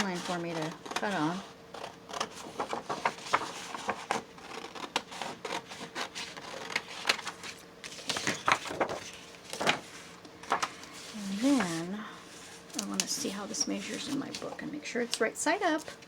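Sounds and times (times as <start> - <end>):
scissors cutting paper: 0.0 - 7.4.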